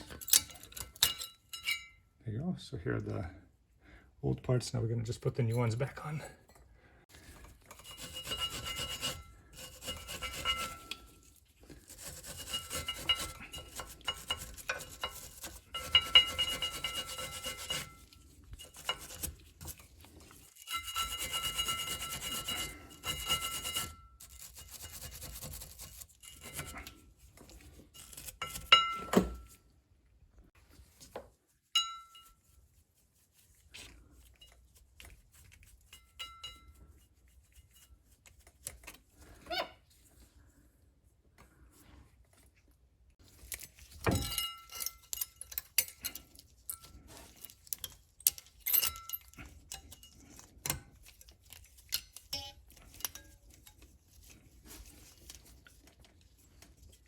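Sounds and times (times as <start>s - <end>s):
scraping on brake hardware: 7.2s - 29.5s.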